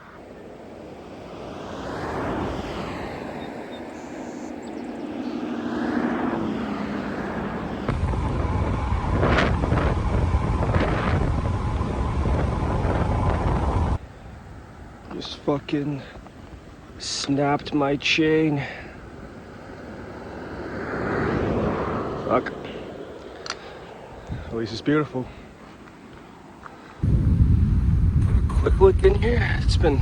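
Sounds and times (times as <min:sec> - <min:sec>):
passing engine: 0:00.0 - 0:15.0, 0:19.0 - 0:26.0
wind rumble on microphone: 0:04.7 - 0:14.8, 0:24.0 - 0:24.7, 0:27.0 - 0:30.0.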